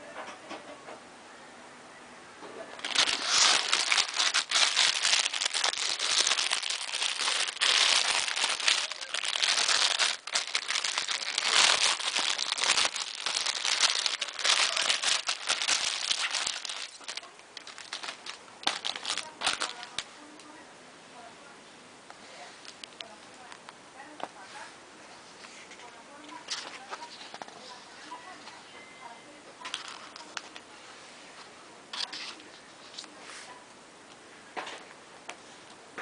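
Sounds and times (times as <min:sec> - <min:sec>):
packaging crinkling: 0:02.8 - 0:20.1, 0:29.7 - 0:30.6.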